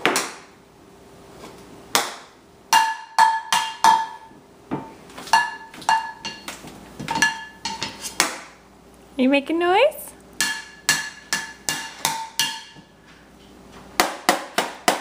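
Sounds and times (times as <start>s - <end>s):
metal kitchenware banging: 2.7s - 4.3s, 5.3s - 8.2s, 10.4s - 12.9s.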